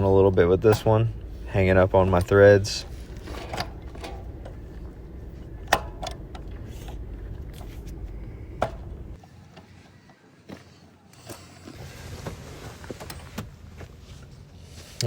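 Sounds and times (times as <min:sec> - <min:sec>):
low steady hum: 0:00.0 - 0:10.4.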